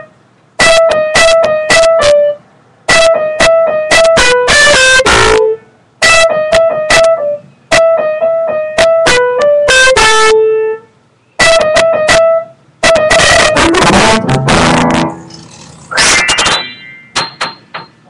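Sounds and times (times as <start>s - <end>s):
piano playing quick phrases: 0.0s - 10.8s, 11.4s - 18.0s.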